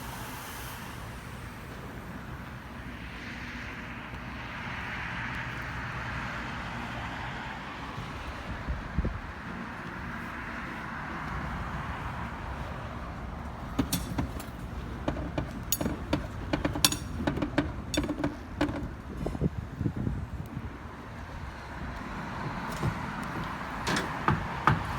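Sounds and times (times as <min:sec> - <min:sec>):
sharp clinks and knocks: 0:13.8 - 0:18.9.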